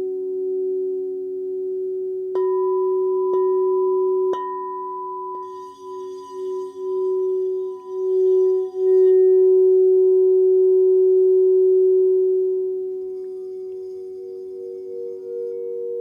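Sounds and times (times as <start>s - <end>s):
crystal singing bowls ringing: 2.3s - 16.0s
higher singing bowl ringing: 2.4s - 16.0s.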